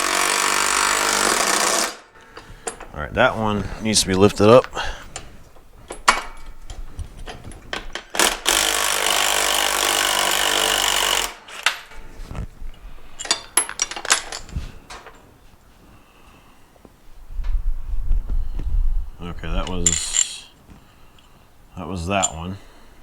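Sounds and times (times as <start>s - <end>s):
electric ratchet running: 0.0s - 2.1s, 8.1s - 11.5s
metallic clicks of tools: 13.2s - 15.2s.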